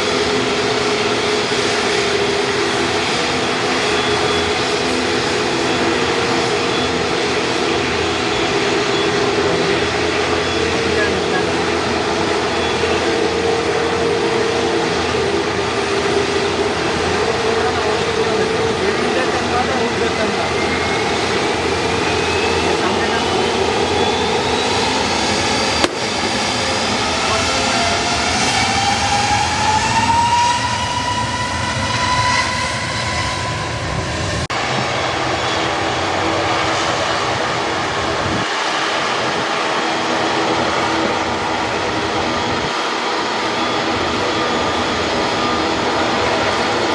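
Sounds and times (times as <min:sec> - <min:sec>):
jet engines running: 0:00.0 - 0:46.9.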